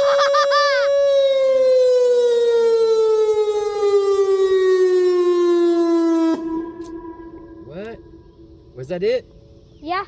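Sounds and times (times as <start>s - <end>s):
warning siren wail: 0.0s - 8.8s
faint steady tone: 6.3s - 9.9s.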